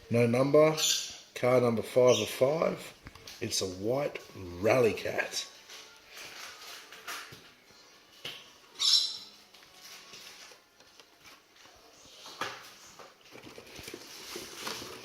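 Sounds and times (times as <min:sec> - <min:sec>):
plastic crackle: 0:05.7 - 0:07.4, 0:13.2 - 0:15.0
cardboard packs scraping and rustling: 0:13.2 - 0:15.0.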